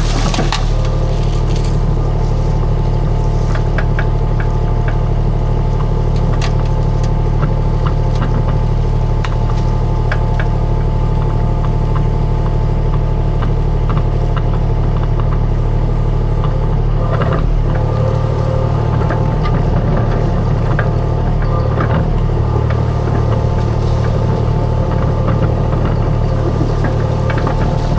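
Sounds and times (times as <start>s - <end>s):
sharp clanks and cracks: 0.0s - 10.9s
skid steer engine running: 0.0s - 27.9s.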